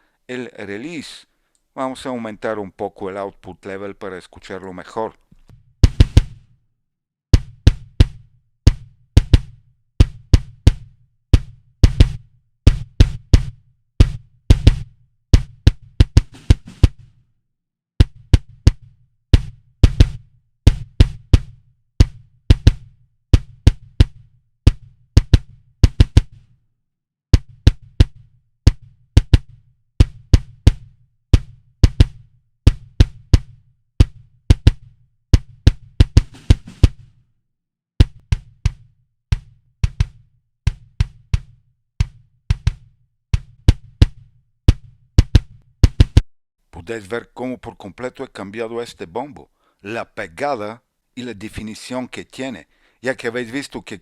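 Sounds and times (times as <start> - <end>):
kick drum pattern: 5.5 - 6.4, 7.4 - 17.1, 18.0 - 26.4, 27.4 - 37.1, 38.0 - 46.2.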